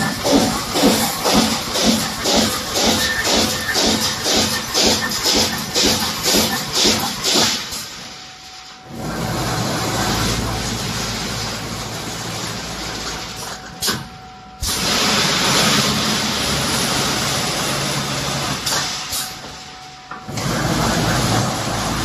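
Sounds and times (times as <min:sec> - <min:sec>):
welding machine running: 0:00.0 - 0:22.0
sharp machine click: 0:00.1 - 0:07.8.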